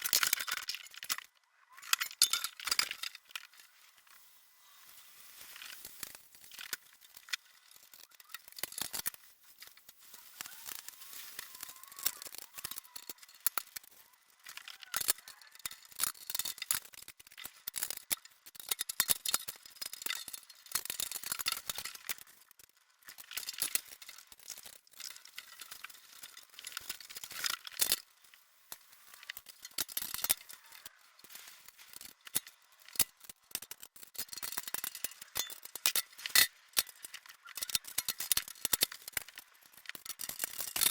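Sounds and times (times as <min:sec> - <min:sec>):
parts clicking and rattling: 0:00.0 - 0:40.9
packaging rustling: 0:04.9 - 0:17.6.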